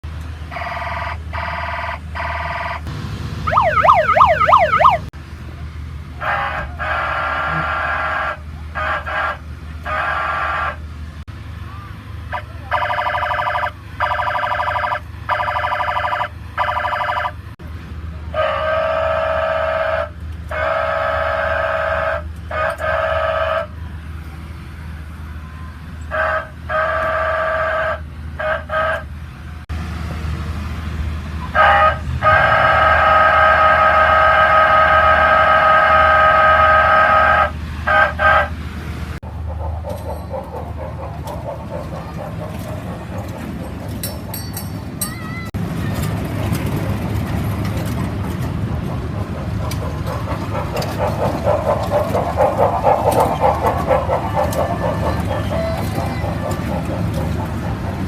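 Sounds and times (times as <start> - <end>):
loud electric horn blasts: 0.5 - 2.9, 6.2 - 10.9, 18.3 - 23.8, 26.1 - 29.2, 31.5 - 38.7.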